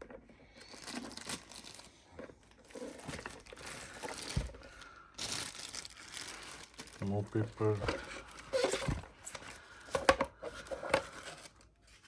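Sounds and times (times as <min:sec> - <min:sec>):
packing paper crinkling and tearing: 0:00.6 - 0:02.0, 0:02.6 - 0:09.7.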